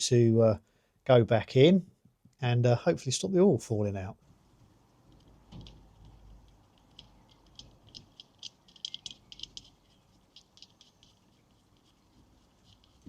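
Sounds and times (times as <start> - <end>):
light clicking and rattling: 4.6 - 13.0.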